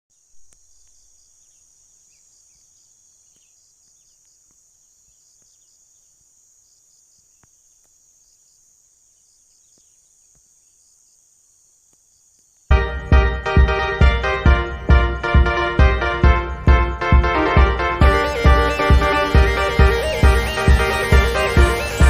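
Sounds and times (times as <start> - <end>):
insect drone with pulsing chirp: 0.1 - 12.7, 18.0 - 22.0.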